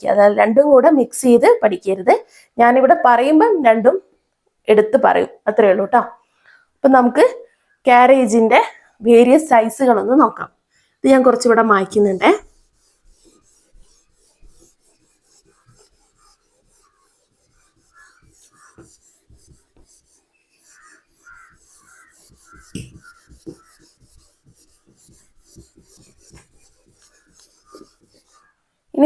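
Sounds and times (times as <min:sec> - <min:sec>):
eraser scrubbing on board: 0:11.6 - 0:28.5.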